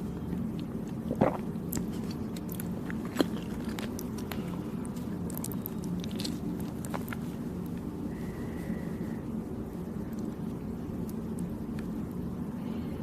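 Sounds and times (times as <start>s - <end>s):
chewing sticky food: 0.0s - 12.5s.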